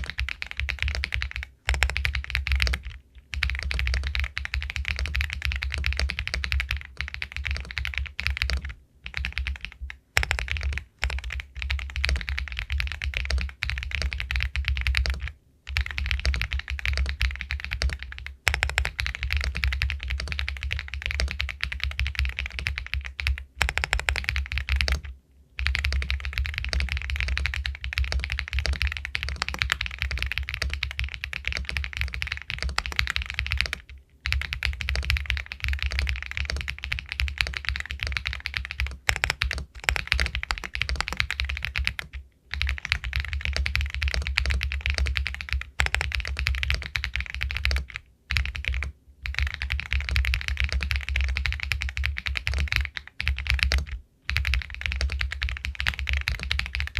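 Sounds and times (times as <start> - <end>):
mechanical keyboard typing: 0.0 - 56.9.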